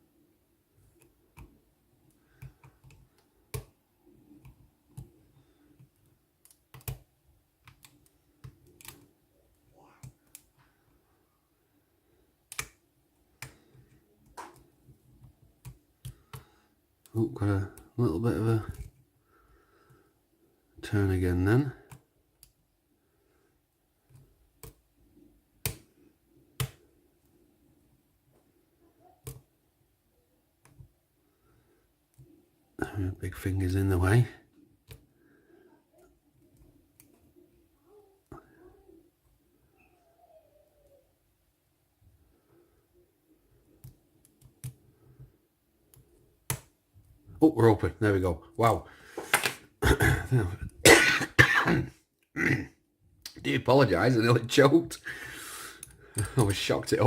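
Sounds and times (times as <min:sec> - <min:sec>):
small clicks and taps: 0:00.9 - 0:03.8, 0:04.4 - 0:10.8, 0:12.5 - 0:17.9, 0:43.7 - 0:46.8.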